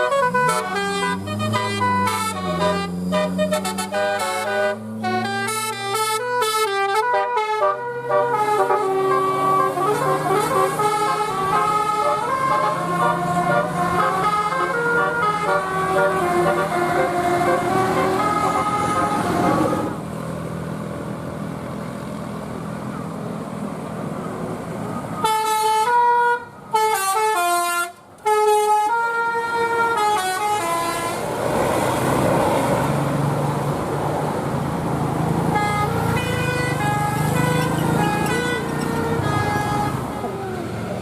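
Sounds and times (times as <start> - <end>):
bus multi-tone air horn tune: 0.0 - 20.0, 25.2 - 31.3, 35.4 - 40.4
bus engine running: 0.0 - 25.8, 26.5 - 41.0.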